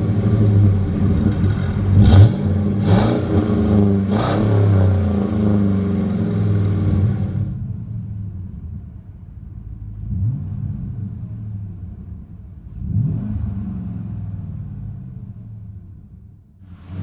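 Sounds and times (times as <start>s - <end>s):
engine revving: 0.0s - 7.6s, 10.0s - 11.8s, 12.7s - 15.2s
pickup truck exhaust idling: 0.0s - 12.7s.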